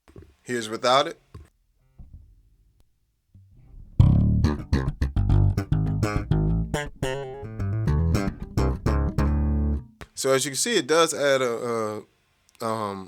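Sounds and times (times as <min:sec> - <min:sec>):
electric bass guitar plucked notes: 0:03.4 - 0:10.0.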